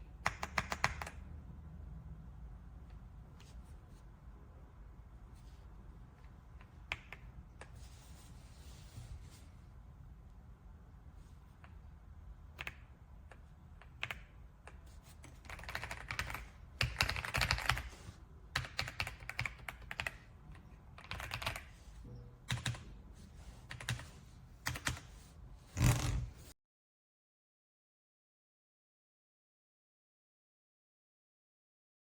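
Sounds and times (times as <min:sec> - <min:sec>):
mechanical keyboard typing: 0:00.2 - 0:01.3, 0:12.5 - 0:20.3, 0:20.9 - 0:21.8, 0:22.4 - 0:22.8, 0:23.7 - 0:25.2.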